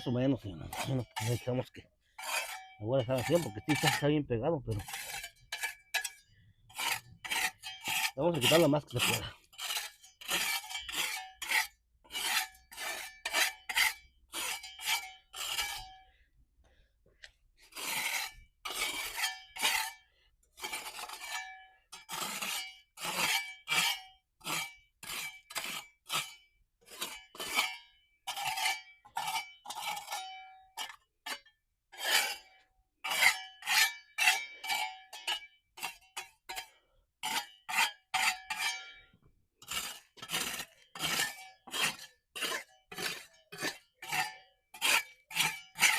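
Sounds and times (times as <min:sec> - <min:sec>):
metal scraper chipping mortar: 0:00.0 - 0:16.1, 0:17.7 - 0:45.9.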